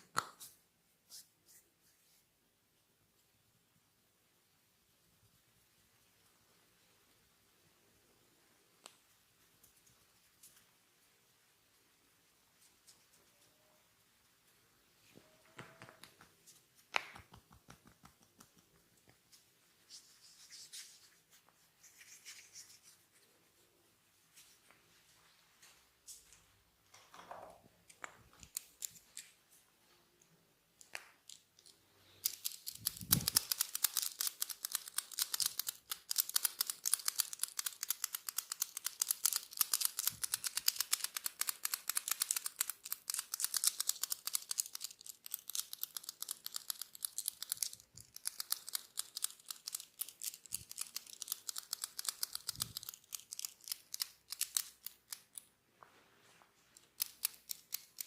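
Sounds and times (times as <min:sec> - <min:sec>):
crackling clicks from hair: 0:31.2 - 0:55.4.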